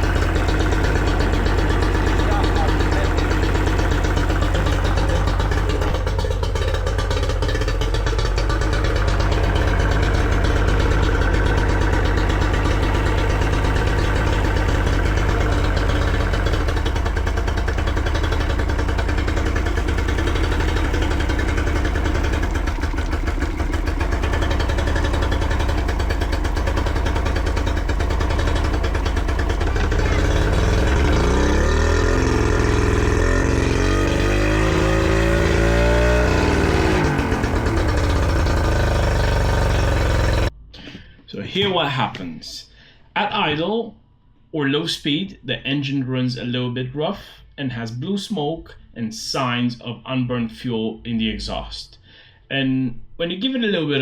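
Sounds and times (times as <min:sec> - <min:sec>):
outboard motor idling: 0:00.0 - 0:40.5.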